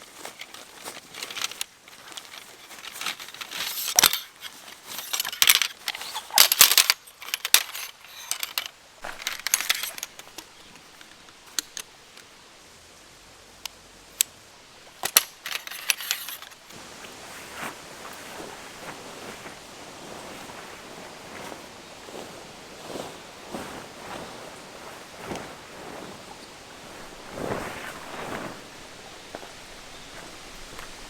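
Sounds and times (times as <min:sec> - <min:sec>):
small metallic clinks and rattles: 0:00.3 - 0:12.2, 0:14.9 - 0:16.7.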